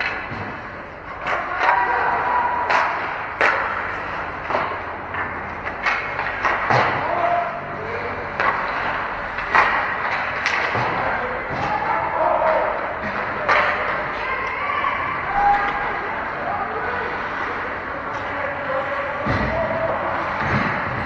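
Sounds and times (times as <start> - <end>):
hockey sticks and puck knocking: 0.0 - 14.6, 15.2 - 21.0
arena noise: 0.0 - 21.0
distant shouts: 1.2 - 3.6, 6.8 - 8.5, 10.8 - 20.8.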